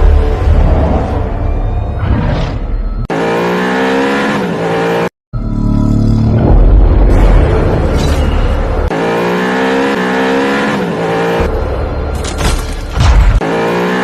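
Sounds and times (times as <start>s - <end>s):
car engine revving: 8.6s - 12.2s, 13.2s - 14.0s.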